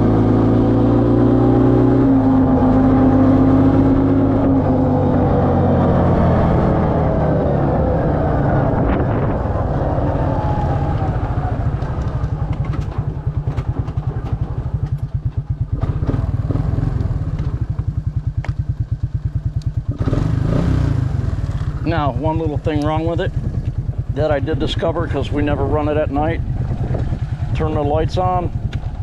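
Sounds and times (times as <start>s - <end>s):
atv engine idling: 10.6s - 29.0s.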